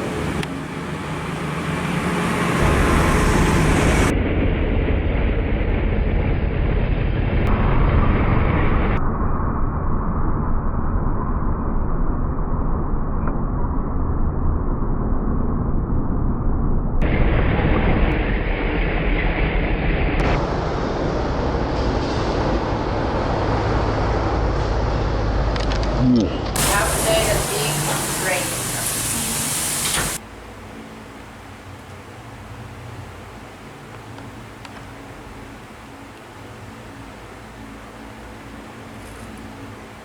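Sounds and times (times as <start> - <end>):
street traffic rumbling: 0.0 - 4.1, 22.6 - 34.4.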